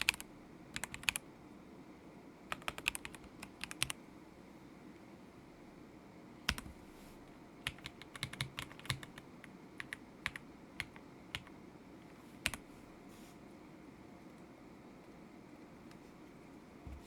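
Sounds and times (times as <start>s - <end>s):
mechanical keyboard typing: 0.0s - 1.2s, 2.5s - 4.0s, 6.5s - 6.7s, 7.6s - 11.6s.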